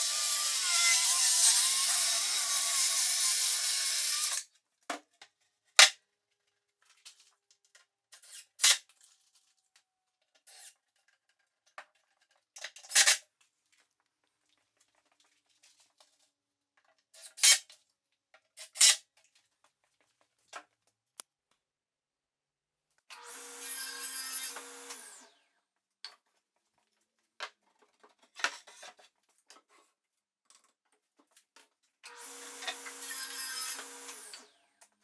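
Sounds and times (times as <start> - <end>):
small power tool running: 0.0 - 4.4, 23.2 - 25.4, 32.1 - 34.6.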